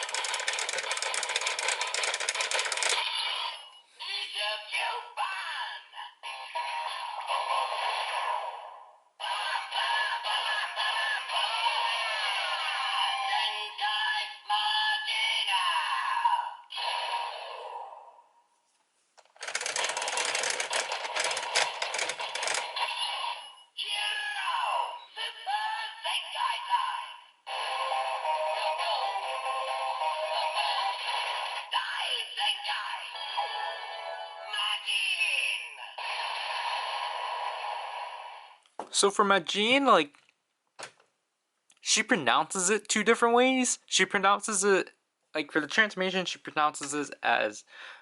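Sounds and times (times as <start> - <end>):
rapid ratcheting clatter: 0.0 - 3.0, 19.4 - 22.8
toy clicking rattle: 0.0 - 3.1, 19.4 - 22.8
electronic voice from toy speaker: 2.8 - 8.4, 9.2 - 17.8, 22.4 - 35.9.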